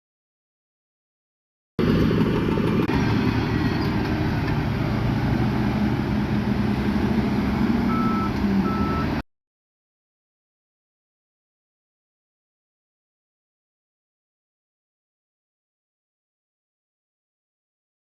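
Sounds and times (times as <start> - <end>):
diesel engine running: 1.8 - 9.2
backup alarm beeping: 7.9 - 9.1.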